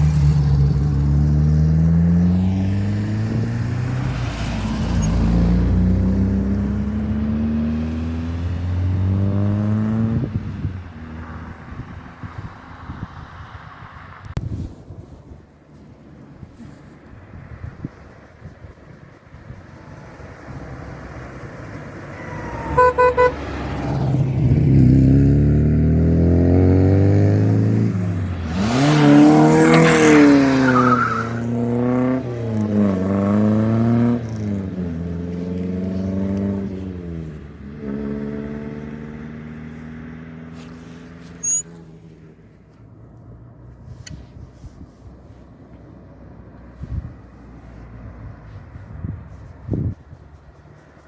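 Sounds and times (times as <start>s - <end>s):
car accelerating past: 0.0s - 14.7s, 19.7s - 42.5s
car horn toots: 22.2s - 23.7s.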